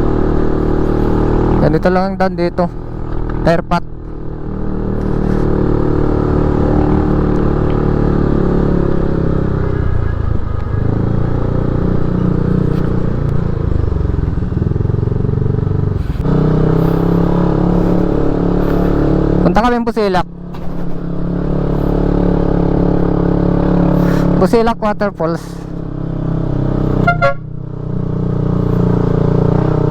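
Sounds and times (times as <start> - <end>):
motorcycle engine running: 0.0 - 29.9.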